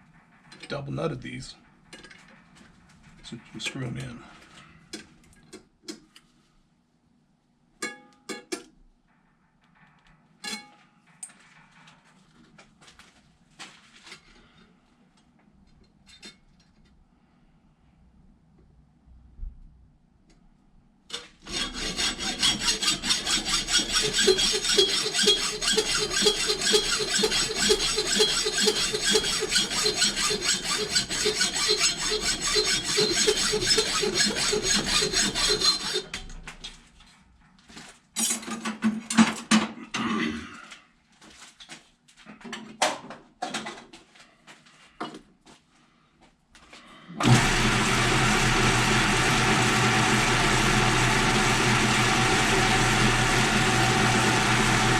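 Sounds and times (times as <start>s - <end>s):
knocks and scrapes: 9.0s - 14.4s, 21.1s - 39.5s
hand tool filing metal: 21.4s - 36.4s
small motor running: 22.3s - 36.0s, 47.2s - 54.9s.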